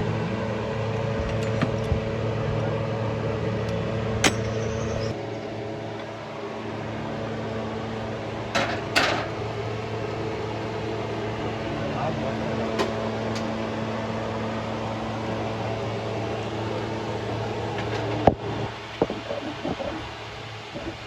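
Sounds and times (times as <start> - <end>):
mechanical hum: 0.0 - 21.0.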